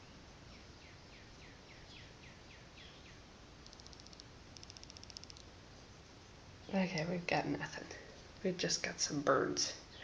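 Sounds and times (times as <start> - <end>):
small birds chirping: 0.0 - 5.5, 9.7 - 10.0.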